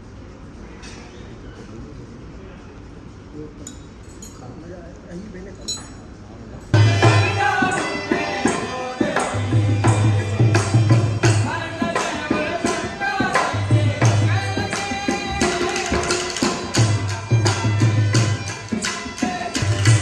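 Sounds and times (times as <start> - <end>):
quick percussion strikes: 6.8 - 20.0.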